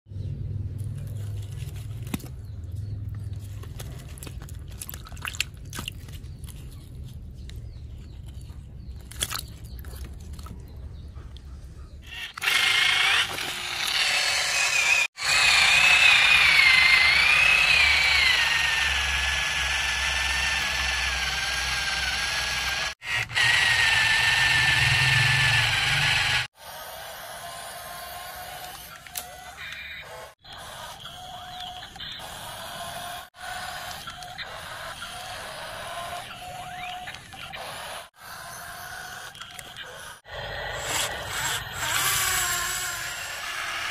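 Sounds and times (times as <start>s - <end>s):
toy motor whining: 12.0s - 43.9s.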